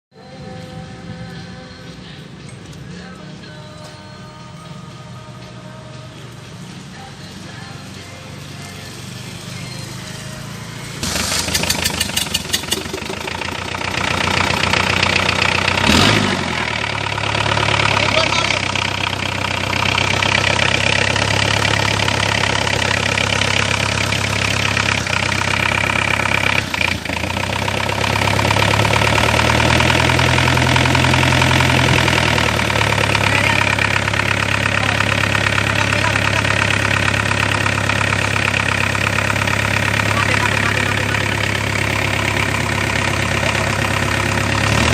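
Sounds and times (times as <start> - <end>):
diesel engine idling: 0.2 - 44.9.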